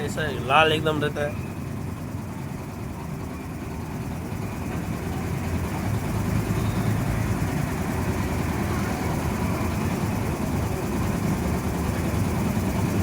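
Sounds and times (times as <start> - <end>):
low mechanical rumble: 0.0 - 6.1.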